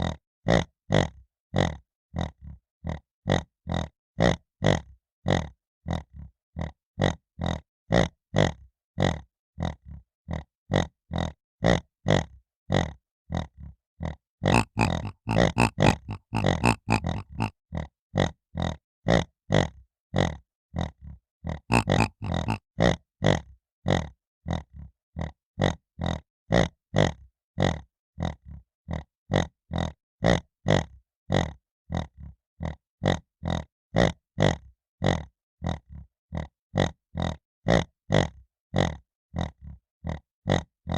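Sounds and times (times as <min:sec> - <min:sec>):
piglet grunting: 0:14.5 - 0:17.5, 0:21.7 - 0:22.6.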